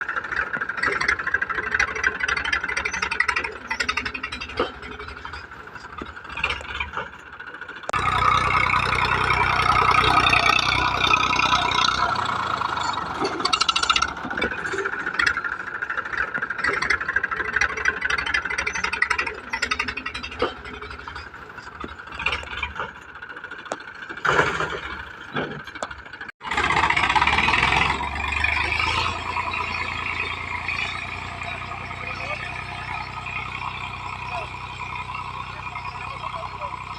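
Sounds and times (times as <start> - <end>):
tractor engine running: 0.0 - 36.9.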